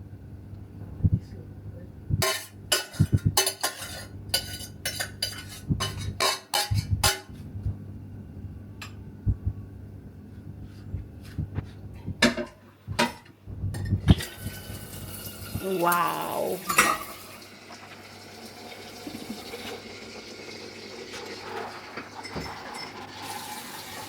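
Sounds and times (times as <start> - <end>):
dishes and cutlery clinking: 2.2 - 7.4, 16.6 - 17.2, 22.2 - 23.2.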